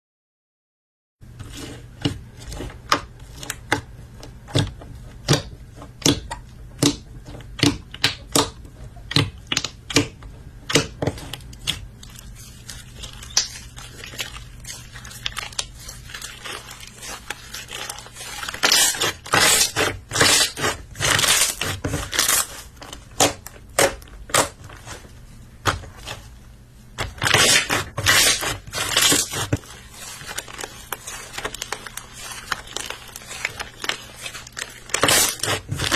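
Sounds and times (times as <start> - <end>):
slime popping and crackling: 6.0 - 22.5, 27.0 - 35.9.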